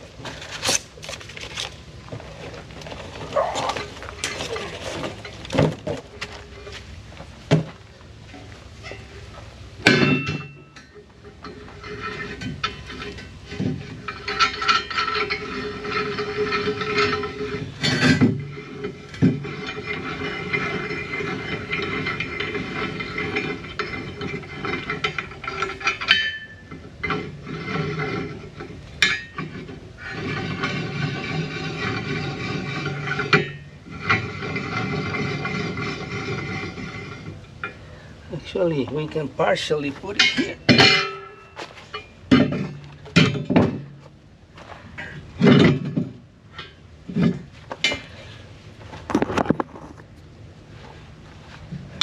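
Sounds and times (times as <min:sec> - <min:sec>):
sharp metal knocks: 0:09.8 - 0:10.9, 0:40.2 - 0:44.0.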